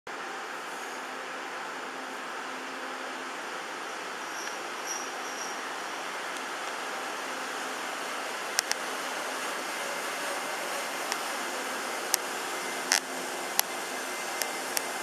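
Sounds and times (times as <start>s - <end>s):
electric train rushing: 0.3s - 15.0s
faint high squeaks: 4.3s - 5.7s.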